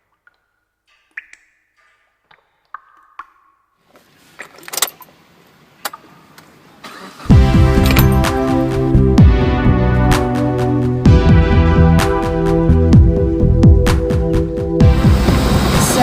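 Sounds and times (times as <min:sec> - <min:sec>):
water drop plinks: 0:00.2 - 0:03.8
electronic music with steady beat: 0:07.3 - 0:16.0.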